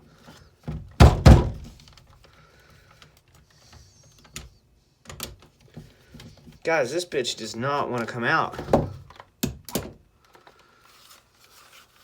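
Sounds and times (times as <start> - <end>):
heavy knocks on power drill: 1.0 - 1.7.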